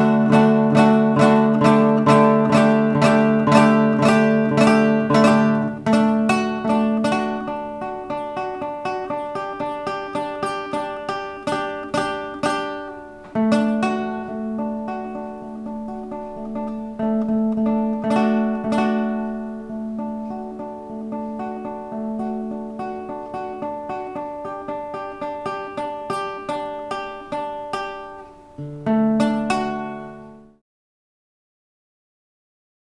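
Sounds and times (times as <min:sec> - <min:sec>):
plucked guitar melody: 0:00.0 - 0:30.6.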